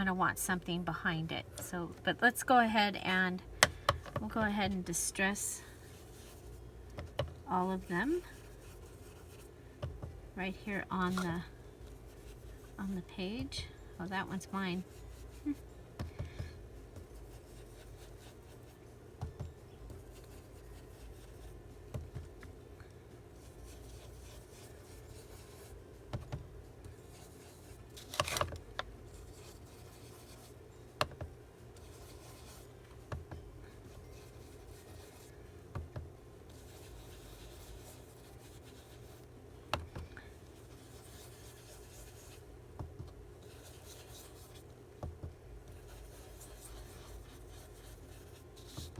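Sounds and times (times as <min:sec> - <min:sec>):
rubbing and scraping on card: 0:07.8 - 0:09.5, 0:17.2 - 0:18.8, 0:23.4 - 0:25.8, 0:27.0 - 0:28.5, 0:29.1 - 0:30.6, 0:31.8 - 0:32.7, 0:34.0 - 0:35.3, 0:36.5 - 0:39.2, 0:40.6 - 0:42.4, 0:43.4 - 0:44.7, 0:45.7 - 0:48.9.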